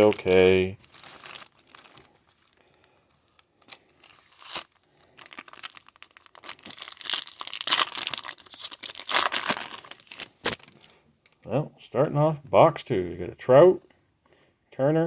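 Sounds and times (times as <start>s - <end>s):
foil wrapper crinkling: 0.0s - 11.0s.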